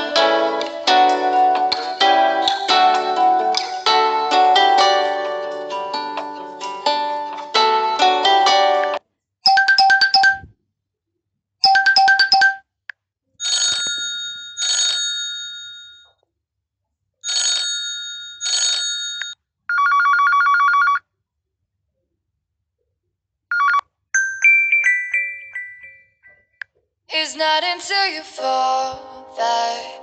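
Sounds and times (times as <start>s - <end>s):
bell-like chimes: 24.2s - 26.5s.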